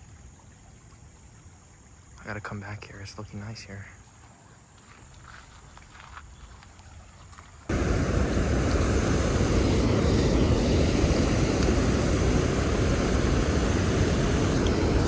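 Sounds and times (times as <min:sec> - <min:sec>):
loud low rushing noise: 0:07.7 - 0:15.0.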